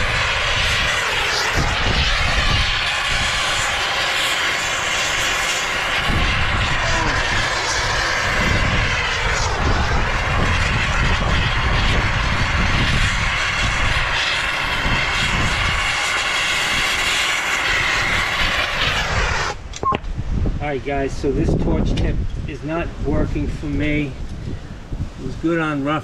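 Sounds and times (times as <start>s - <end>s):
soldering torch roaring: 0.0s - 19.8s.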